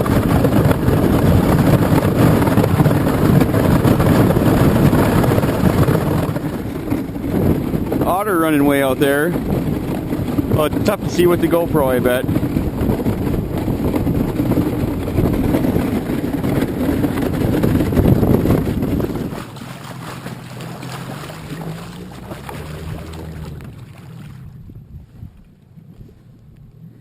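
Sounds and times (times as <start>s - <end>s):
boat motor running: 0.0s - 27.0s
wind on microphone: 0.0s - 27.0s.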